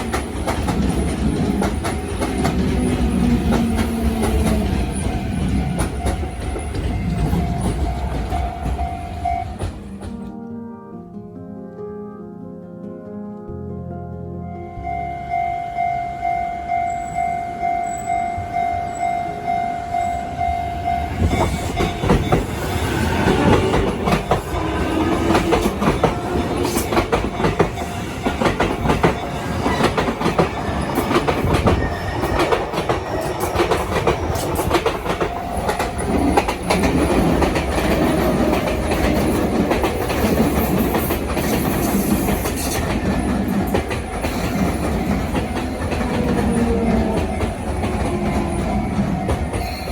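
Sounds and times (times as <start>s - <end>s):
level crossing warning bell: 0.0s - 10.2s, 14.6s - 49.9s
train wheels clattering on rails: 0.0s - 10.3s, 20.7s - 49.9s.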